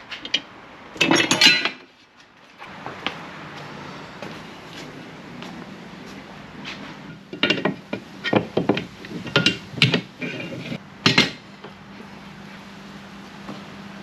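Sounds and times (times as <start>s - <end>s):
tools knocking and clinking: 7.3s - 10.1s, 11.0s - 11.4s.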